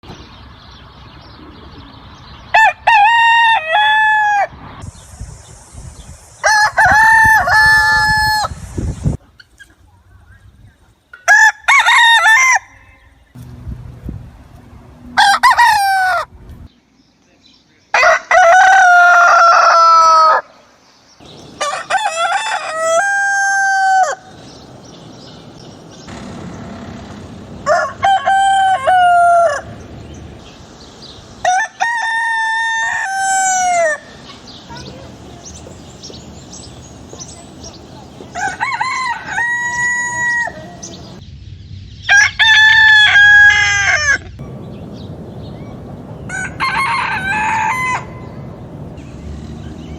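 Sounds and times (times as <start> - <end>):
roosters crowing: 2.5 - 4.8, 6.4 - 8.7, 11.2 - 13.1, 15.0 - 16.4, 17.9 - 41.2, 42.0 - 49.9.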